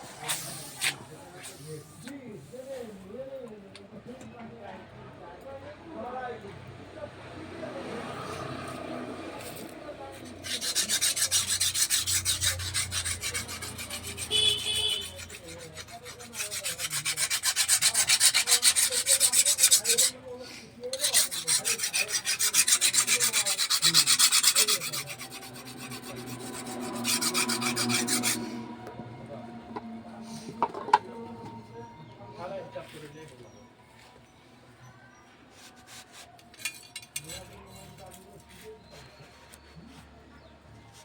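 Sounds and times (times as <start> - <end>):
rasping strokes on steel: 9.4 - 29.2, 35.5 - 39.9.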